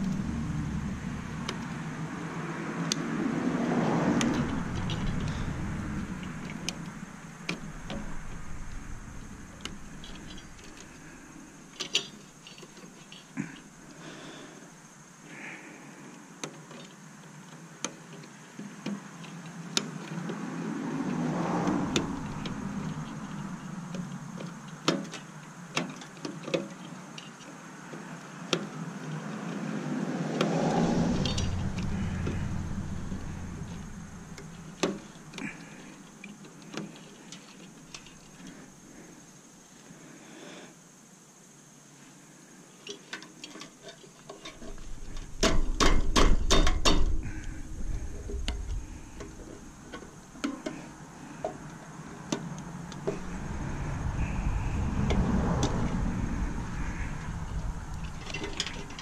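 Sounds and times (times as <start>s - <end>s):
broad rushing sound: 0.0s - 11.7s, 30.0s - 35.2s, 52.8s - 59.0s.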